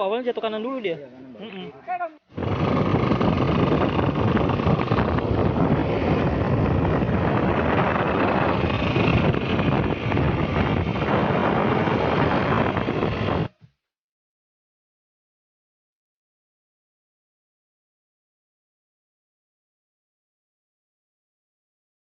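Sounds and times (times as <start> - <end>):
vehicle noise: 2.3 - 13.7
wind buffeting microphone: 2.3 - 13.7.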